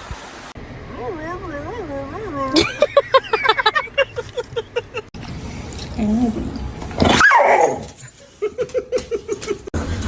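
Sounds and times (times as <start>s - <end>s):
dog whining: 5.8s - 8.3s
dog yelping: 6.0s - 8.3s
dog yipping: 7.0s - 8.2s.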